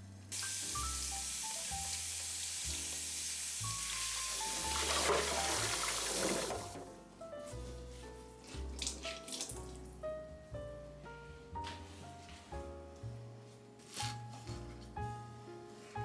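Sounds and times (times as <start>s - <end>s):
tap water running into sink: 0.3s - 6.8s, 8.6s - 9.8s.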